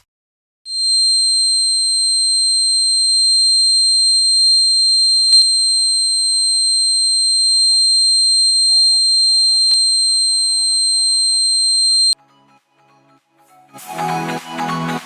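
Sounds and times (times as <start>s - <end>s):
high-pitched alarm buzzer: 0.7s - 12.2s
click: 0.8s - 12.2s.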